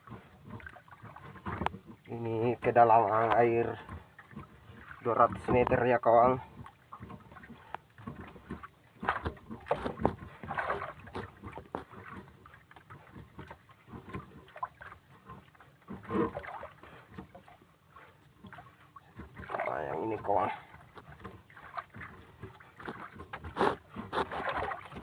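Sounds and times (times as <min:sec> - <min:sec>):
fishing line knocks and scrapes: 0:06.6 - 0:18.6, 0:19.2 - 0:25.0.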